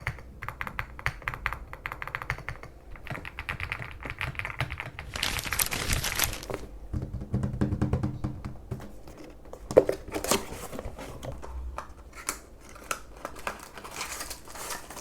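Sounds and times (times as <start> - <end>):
mechanical keyboard typing: 0.0 - 6.4.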